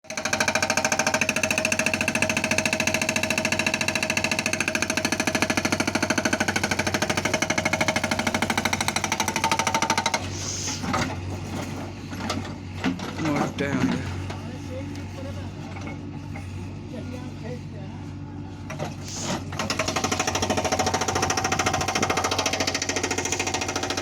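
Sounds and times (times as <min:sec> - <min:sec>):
hydraulic rock breaker hammering: 0:00.1 - 0:11.0, 0:18.7 - 0:24.0
excavator engine running: 0:00.1 - 0:24.0.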